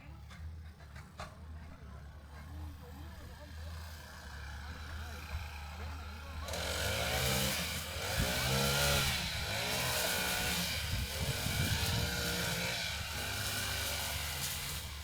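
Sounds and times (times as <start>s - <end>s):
lawnmower engine running: 3.2s - 15.0s.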